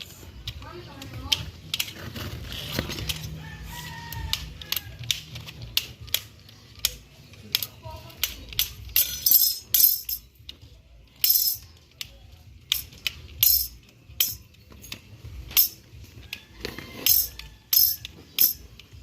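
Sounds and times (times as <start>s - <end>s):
umbrella frame metallic clicks: 4.1s - 10.2s.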